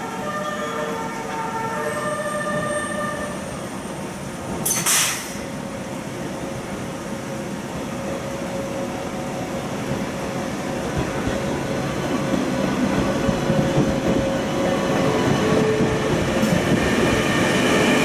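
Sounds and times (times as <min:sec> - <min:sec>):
freight train rolling on rails: 0:00.0 - 0:18.0
short loud hiss: 0:04.6 - 0:05.5.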